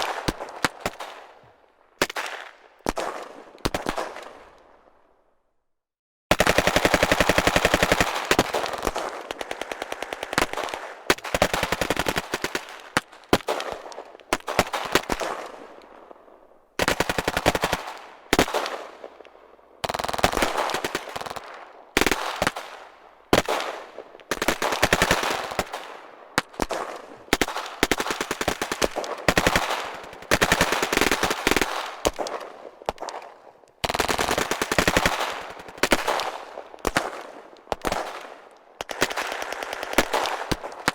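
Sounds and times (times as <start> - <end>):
automatic machine-gun fire: 6.3 - 13.7, 24.4 - 25.8, 26.6 - 32.5, 33.8 - 36.4.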